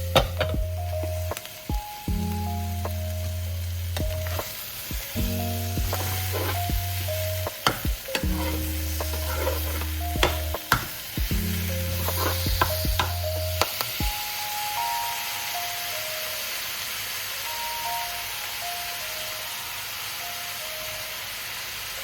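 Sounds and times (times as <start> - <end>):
food sizzling in a pan: 0.0 - 22.0
soft music: 0.0 - 22.0
utensil scraping a pan: 4.0 - 4.6, 5.6 - 11.0, 11.8 - 13.8.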